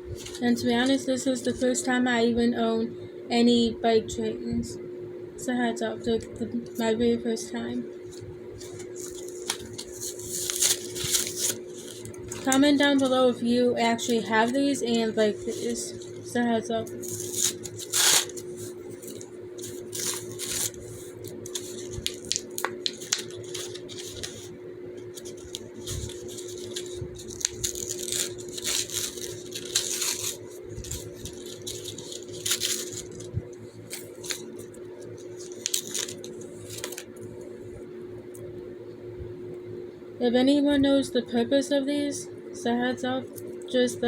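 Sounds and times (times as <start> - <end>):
steady hum: 0.0 - 44.0.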